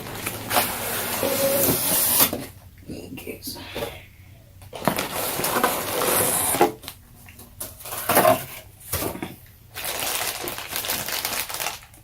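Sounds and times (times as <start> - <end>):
packaging scraping and rustling: 0.0 - 2.5, 4.7 - 7.0, 7.7 - 12.0.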